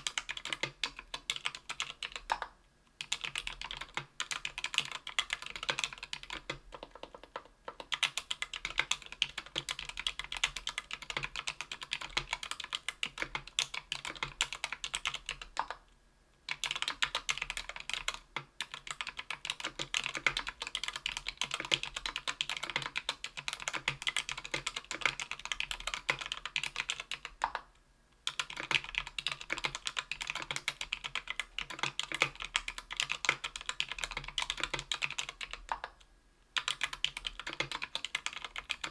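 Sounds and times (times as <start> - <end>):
fast keyboard typing: 0.0 - 15.8, 16.5 - 36.0, 36.6 - 38.9.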